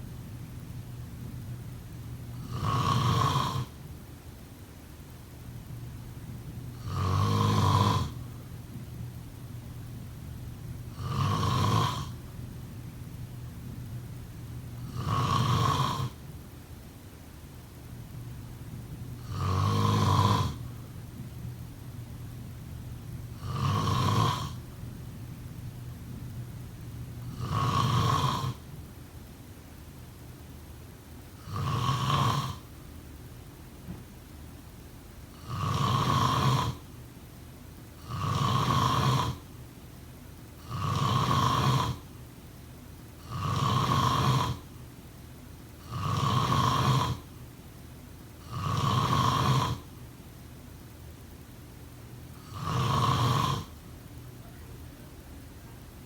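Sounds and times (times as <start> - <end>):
person snoring: 2.4 - 3.8, 6.8 - 8.4, 10.9 - 12.2, 14.8 - 16.2, 19.2 - 20.8, 23.4 - 24.6, 27.3 - 28.6, 31.4 - 32.7, 35.3 - 36.8, 38.0 - 39.4, 40.6 - 42.0, 43.2 - 44.7, 45.8 - 47.3, 48.4 - 49.9, 52.4 - 53.8.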